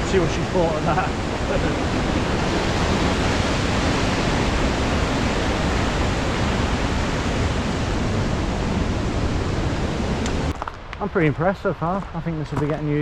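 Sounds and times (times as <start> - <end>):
stream and waterfall rushing: 0.0 - 10.5.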